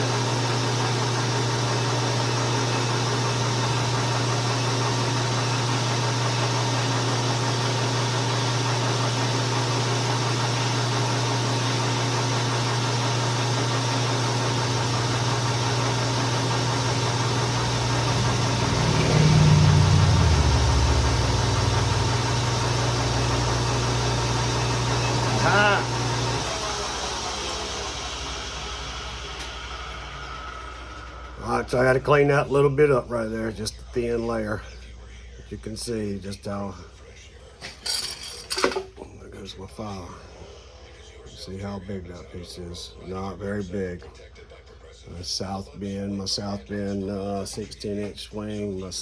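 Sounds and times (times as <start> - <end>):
lathe running: 0.0 - 32.7.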